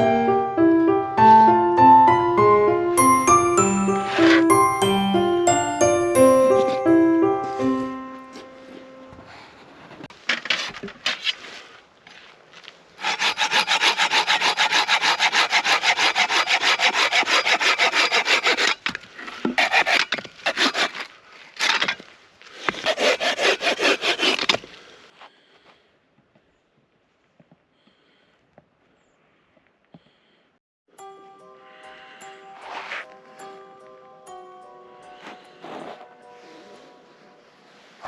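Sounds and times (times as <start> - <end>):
hand saw cutting wood: 13.0 - 24.8
saw scraping: 13.0 - 24.8.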